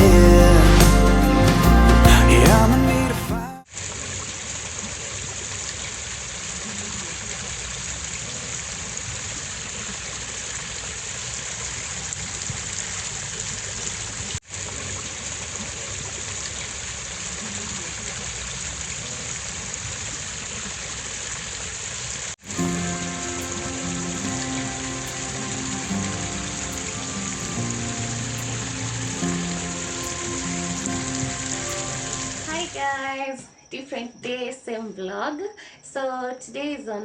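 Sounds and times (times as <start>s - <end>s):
running water: 3.7s - 32.9s.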